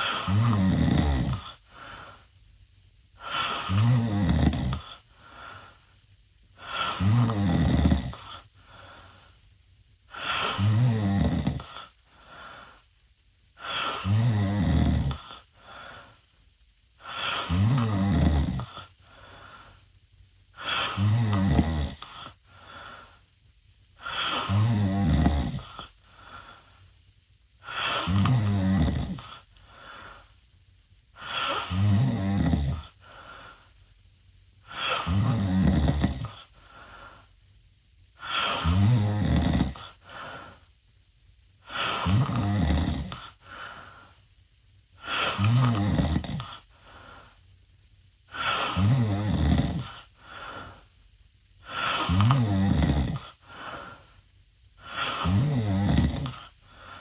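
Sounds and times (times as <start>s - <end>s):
person snoring loudly: 0.0s - 1.6s, 3.2s - 5.0s, 6.6s - 8.4s, 10.1s - 11.9s, 13.6s - 15.4s, 17.0s - 18.9s, 20.6s - 22.4s, 24.0s - 25.9s, 27.6s - 29.4s, 31.2s - 33.0s, 34.6s - 36.5s, 38.2s - 40.3s, 41.6s - 43.4s, 45.0s - 46.7s, 48.3s - 50.7s, 51.6s - 53.8s, 54.8s - 56.5s
quiet breathing: 0.0s - 57.0s.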